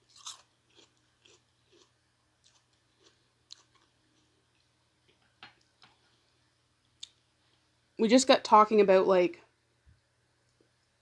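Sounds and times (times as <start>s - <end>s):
faint wet chewing: 0.0s - 6.2s.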